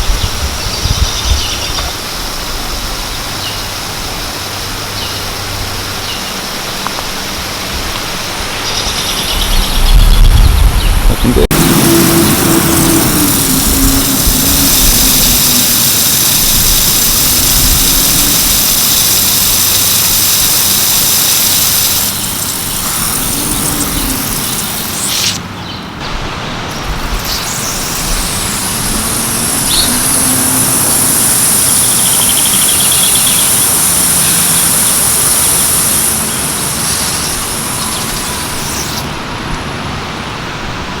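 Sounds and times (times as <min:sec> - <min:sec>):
sprinklers spraying water: 0:11.2 - 0:25.5, 0:26.2 - 0:39.3.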